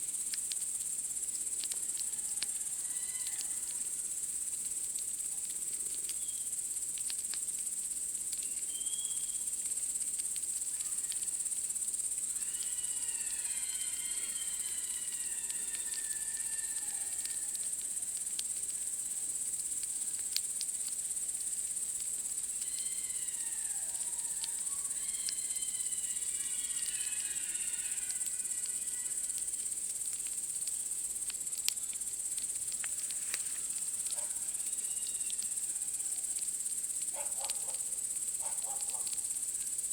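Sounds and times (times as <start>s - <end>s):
campfire crackling and popping: 0.0s - 13.0s, 14.3s - 23.4s, 24.2s - 27.0s, 28.0s - 35.6s, 36.2s - 39.9s
crickets chirping: 0.0s - 39.9s
bird whistled call: 8.7s - 9.4s.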